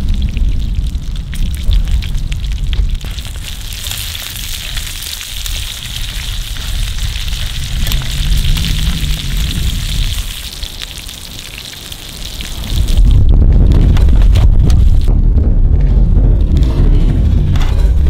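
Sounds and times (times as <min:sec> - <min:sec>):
wind rumble on microphone: 0:00.0 - 0:10.8, 0:12.4 - 0:18.0
food sizzling in a pan: 0:03.0 - 0:13.0.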